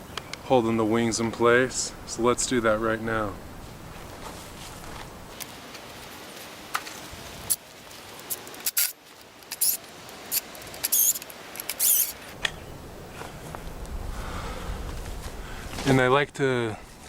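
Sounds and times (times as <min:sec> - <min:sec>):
screwdriver clicks: 0:08.2 - 0:12.2
screws squeaking in wood: 0:08.3 - 0:12.2.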